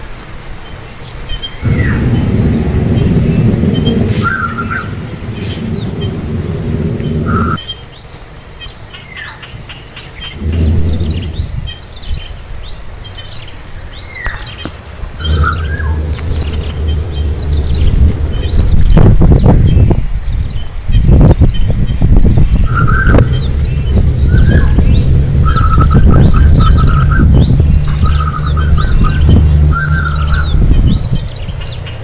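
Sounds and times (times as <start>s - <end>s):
pulsing insect buzz: 0.3s - 8.9s, 9.5s - 32.0s
high bird chirps: 1.4s - 7.8s, 14.0s - 32.0s
loud low rumbling noise: 1.6s - 7.6s, 10.2s - 12.8s, 14.5s - 32.0s.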